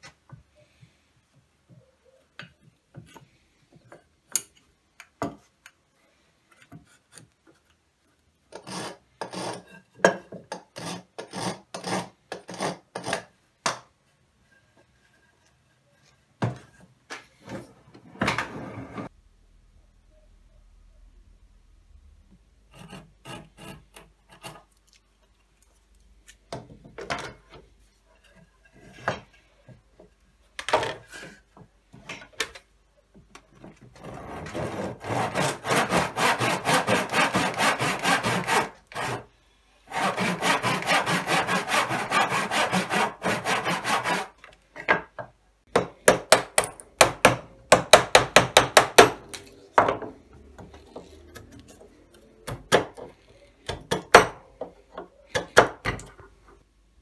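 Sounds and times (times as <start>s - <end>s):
hand tool sawing wood: 34.0s - 39.3s, 39.9s - 44.4s.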